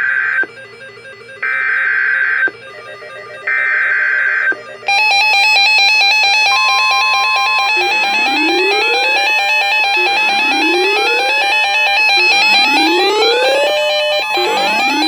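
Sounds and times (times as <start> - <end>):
loud electronic music: 3.7 - 15.0
steady beep: 6.5 - 15.0
screeching digital data bursts: 7.6 - 15.0.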